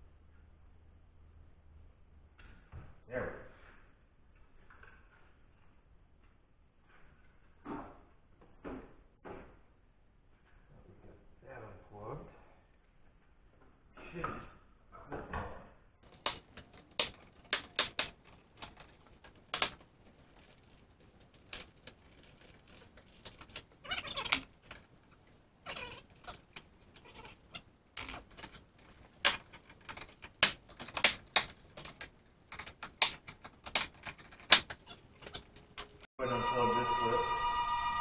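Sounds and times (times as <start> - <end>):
plastic trim clips clicking: 16.0 - 20.8, 28.0 - 36.0
scraping rustle: 16.1 - 36.1.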